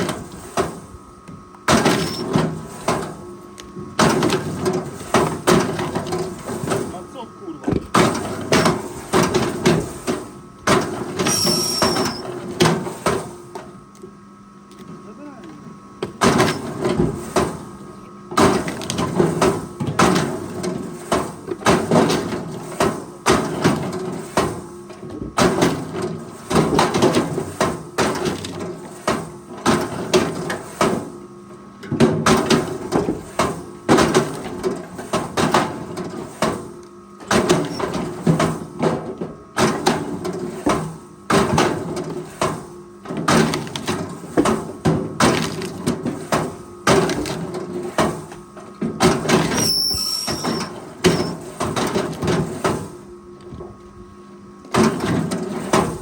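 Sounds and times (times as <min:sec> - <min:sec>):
machine engine hum: 0:00.1 - 0:18.7
wood cracking and snapping: 0:45.2 - 0:46.0.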